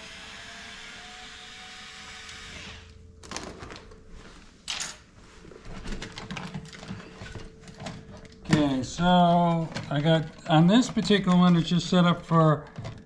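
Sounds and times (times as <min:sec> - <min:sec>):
small power drill running: 0:00.0 - 0:02.9
handling clicks and rattles: 0:05.6 - 0:13.0.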